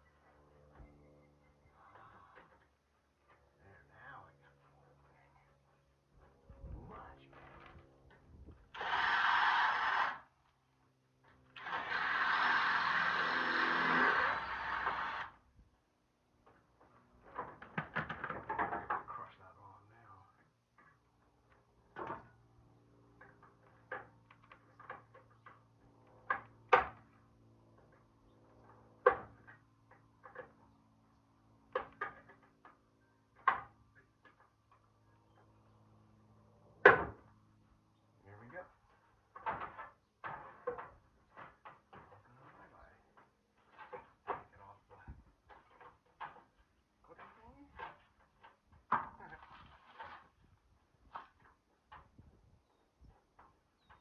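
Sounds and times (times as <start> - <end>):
small motor running with hiss: 8.8 - 10.2, 11.6 - 15.3.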